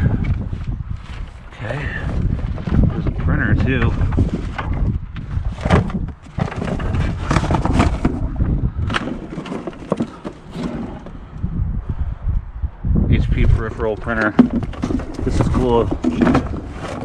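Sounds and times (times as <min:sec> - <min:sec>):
junk clattering as rummaged: 0:02.2 - 0:11.2, 0:14.0 - 0:17.0.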